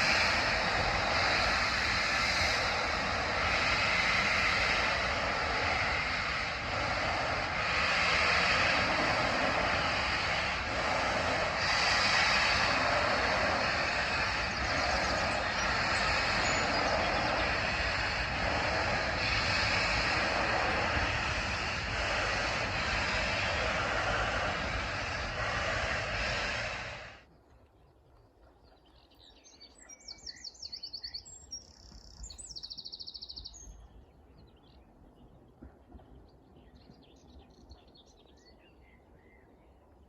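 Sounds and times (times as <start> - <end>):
locomotive rushing roar: 0.0 - 27.2.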